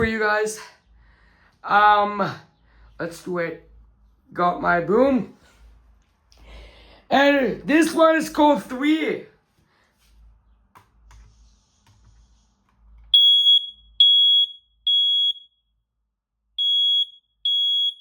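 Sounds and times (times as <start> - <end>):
smoke alarm high-pitched beeps: 13.1 - 15.7, 16.6 - 18.0.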